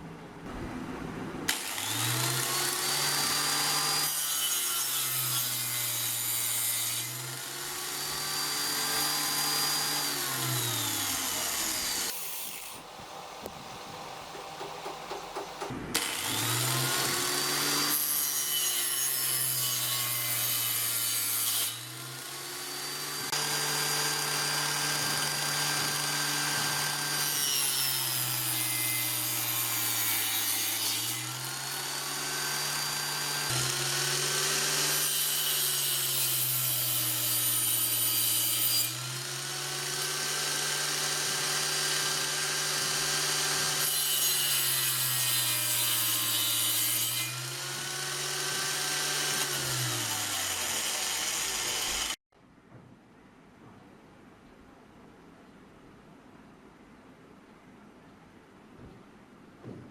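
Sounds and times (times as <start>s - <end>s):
saw blade cutting wood: 1.5s - 12.9s, 13.9s - 52.2s
saw motor running: 21.7s - 27.3s, 31.3s - 35.2s, 47.3s - 52.2s.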